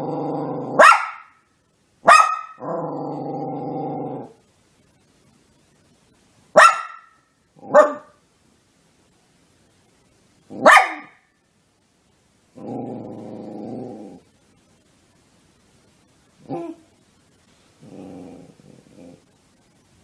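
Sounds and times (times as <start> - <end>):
dog barking: 0.8 - 1.4, 2.0 - 2.6, 6.6 - 8.2, 10.5 - 11.2.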